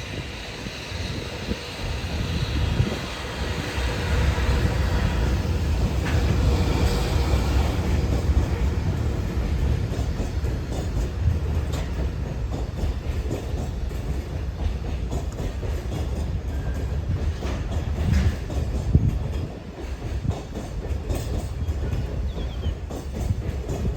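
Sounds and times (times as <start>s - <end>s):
train wheels rumbling on rail: 0.0s - 23.9s
wagons clattering over rail joints: 5.0s - 23.9s.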